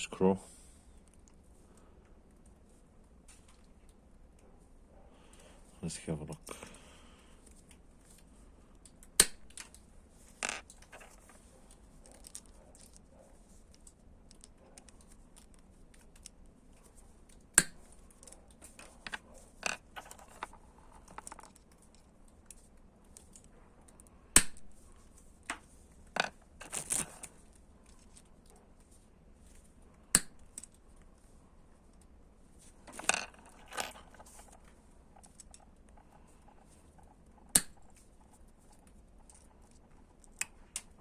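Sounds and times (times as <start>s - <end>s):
handling clicks and rattles: 8.1s - 24.1s, 25.0s - 29.6s, 32.0s - 41.0s
bolt cutters snapping screws: 9.0s - 9.8s, 30.1s - 30.7s, 37.5s - 37.8s.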